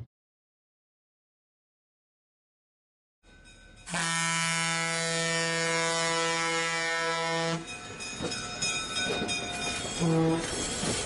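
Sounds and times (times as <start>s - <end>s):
locomotive air horn: 3.9s - 7.6s, 10.0s - 10.6s
train rumbling and clattering: 5.2s - 11.0s.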